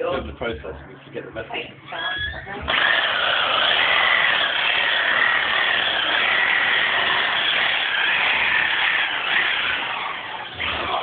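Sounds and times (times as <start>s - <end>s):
electric drill running: 2.7s - 11.0s.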